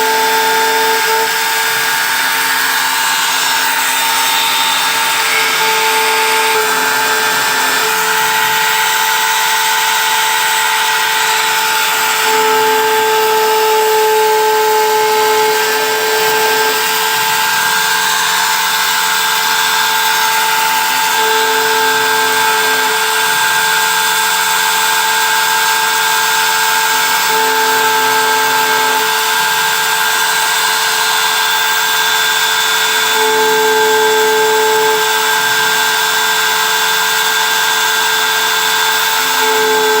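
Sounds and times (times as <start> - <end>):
engraving machine whine and cutting: 0.0 - 40.0
low motor tone: 3.8 - 23.8.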